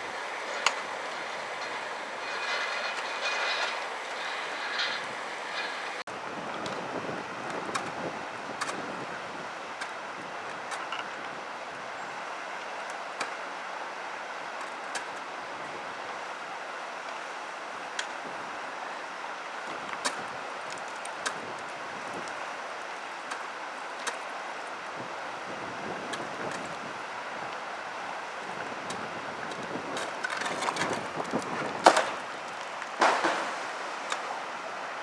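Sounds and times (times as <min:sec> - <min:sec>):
rushing outdoor noise: 0:00.0 - 0:35.0
sharp knocks: 0:33.0 - 0:33.7.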